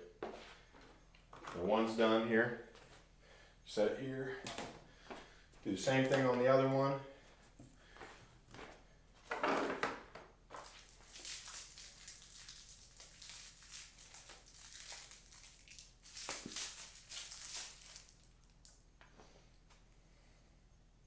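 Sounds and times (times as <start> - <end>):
plastic parts crinkling and rustling: 10.5 - 18.8.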